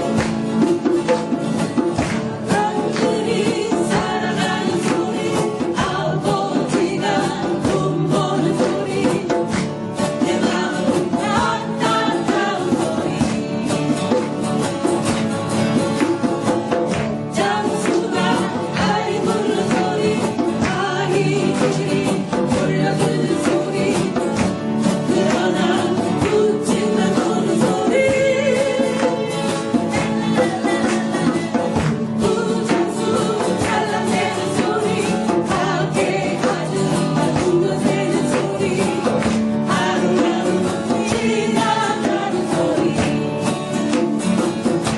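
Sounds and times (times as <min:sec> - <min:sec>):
acoustic guitar: 0:00.0 - 0:44.9
person singing: 0:25.0 - 0:44.8.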